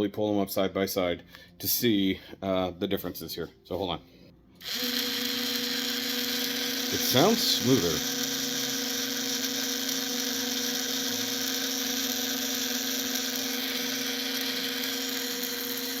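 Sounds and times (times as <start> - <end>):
small motors whirring plastic gears: 4.6 - 16.0.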